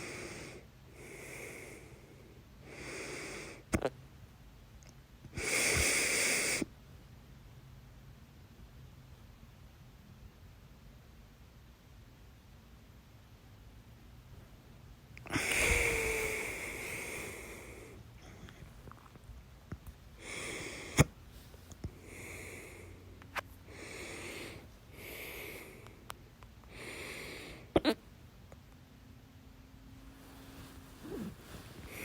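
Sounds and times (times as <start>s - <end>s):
person breathing heavily: 15.3s - 18.8s, 20.2s - 26.1s, 26.7s - 27.7s, 30.0s - 32.0s
person hiccuping: 27.7s - 28.0s.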